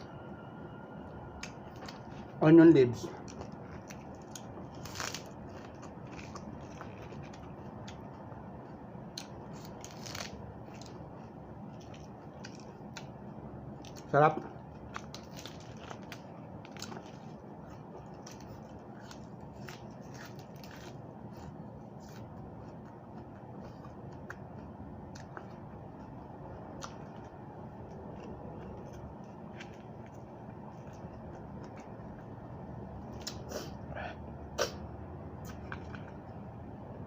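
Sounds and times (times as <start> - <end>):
chewing raw vegetables: 1.3 - 33.8, 35.2 - 36.6.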